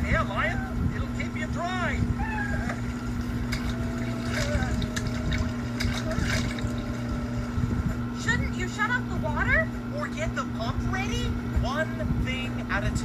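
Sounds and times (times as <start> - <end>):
water gushing: 2.8 - 7.4
water splashes: 2.8 - 7.4.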